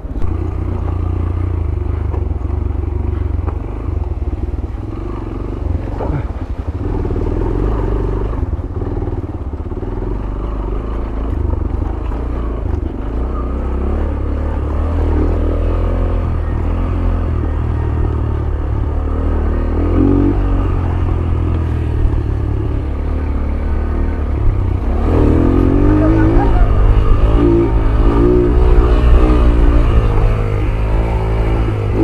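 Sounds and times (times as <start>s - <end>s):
motorcycle engine at low revs: 0.0s - 32.0s.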